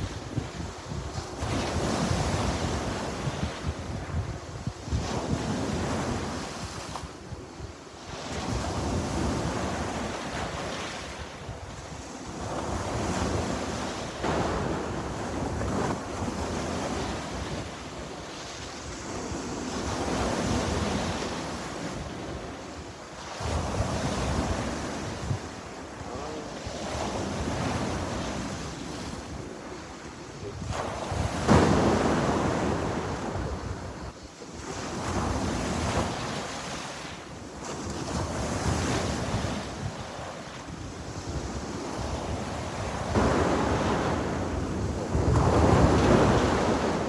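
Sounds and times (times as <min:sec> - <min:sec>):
wind buffeting microphone: 0:00.0 - 0:47.0
waves breaking: 0:12.5 - 0:40.7, 0:41.4 - 0:47.0.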